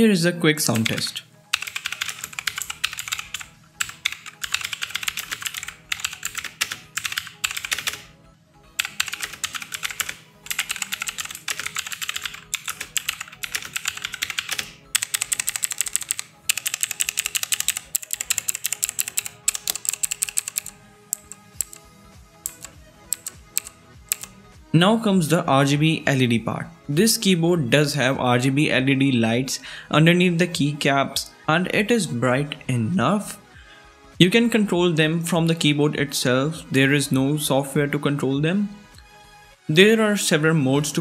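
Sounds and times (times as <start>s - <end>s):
mechanical keyboard typing: 0.7s - 8.1s, 8.8s - 24.4s.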